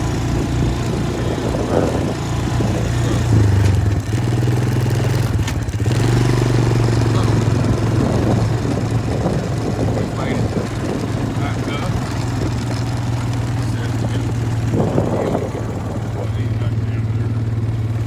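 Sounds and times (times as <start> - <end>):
small off-road vehicle engine: 0.0 - 18.0.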